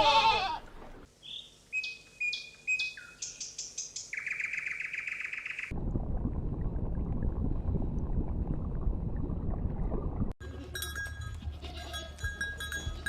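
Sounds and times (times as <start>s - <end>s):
sheep bleating: 0.0s - 0.6s, 11.4s - 12.2s
bells ringing: 10.5s - 13.0s.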